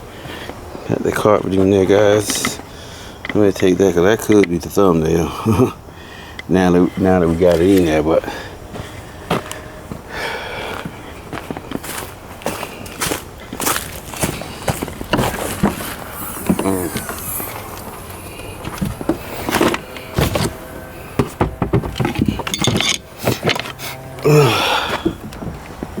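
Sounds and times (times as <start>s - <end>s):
knocks and clunks of parts: 21.2s - 23.8s.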